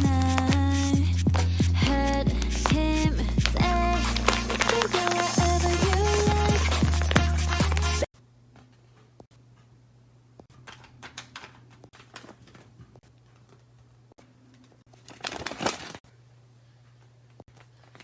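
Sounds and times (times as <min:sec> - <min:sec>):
paper rustling: 0:02.0 - 0:08.1, 0:14.9 - 0:16.0
paper tapping and crinkling: 0:03.4 - 0:08.8, 0:10.5 - 0:13.8, 0:14.9 - 0:16.0.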